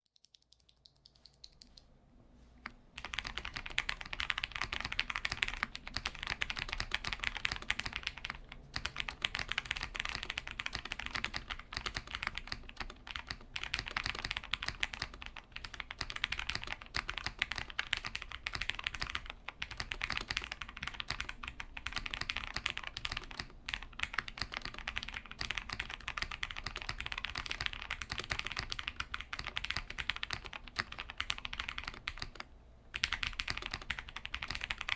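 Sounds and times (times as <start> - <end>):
fast typing on mechanical keyboard: 3.0 - 34.9.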